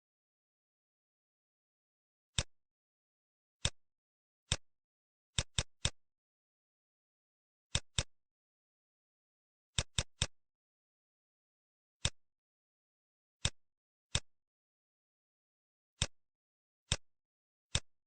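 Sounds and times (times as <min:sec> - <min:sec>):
computer mouse clicking: 0:05.4 - 0:06.0, 0:07.7 - 0:08.1, 0:09.8 - 0:10.3, 0:17.7 - 0:17.9.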